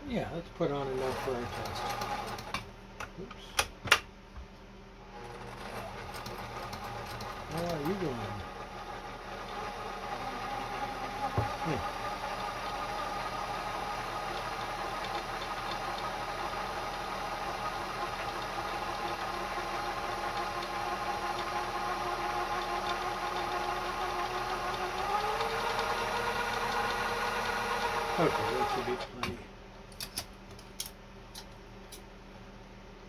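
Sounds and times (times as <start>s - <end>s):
sewing machine motor running: 0.7s - 2.6s, 5.1s - 29.2s.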